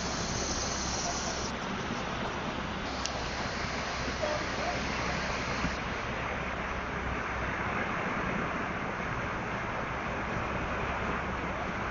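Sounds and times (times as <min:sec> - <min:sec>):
floodwater rushing: 0:02.5 - 0:07.9.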